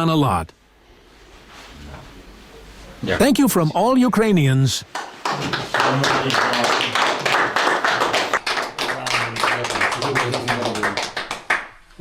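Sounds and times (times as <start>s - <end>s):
people applauding: 4.9s - 11.8s.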